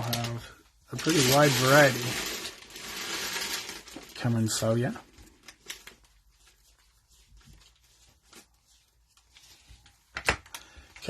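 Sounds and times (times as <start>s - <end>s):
wrapper tearing: 0.0s - 6.2s
trading cards and wrappers rustling: 0.0s - 11.0s.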